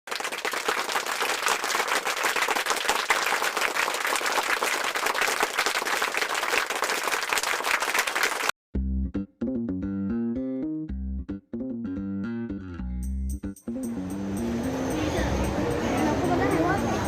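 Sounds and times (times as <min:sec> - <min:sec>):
crowd applauding: 0:00.1 - 0:08.6.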